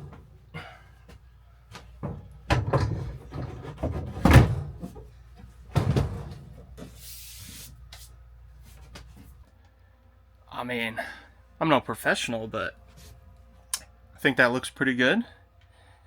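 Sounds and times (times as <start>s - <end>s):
knocks and clunks of parts: 0.0s - 0.5s, 1.1s - 6.9s.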